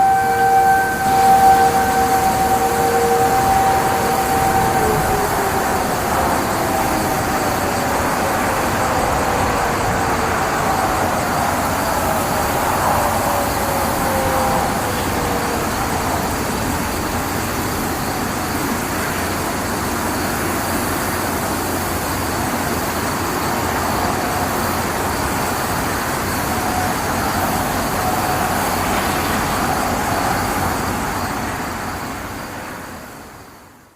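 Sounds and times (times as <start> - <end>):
warning siren winding down: 0.0 - 31.8
road traffic noise: 0.0 - 33.9.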